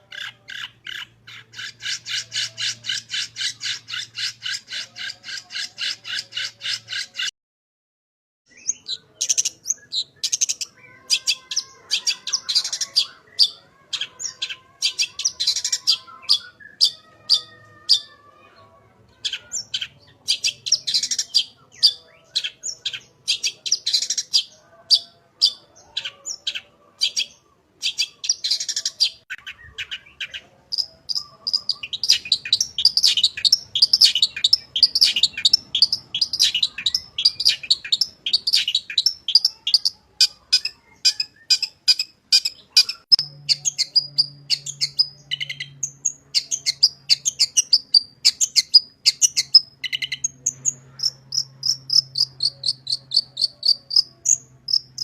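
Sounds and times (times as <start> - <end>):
bird chattering song: 0.0 - 7.3, 8.5 - 18.1, 19.1 - 55.0.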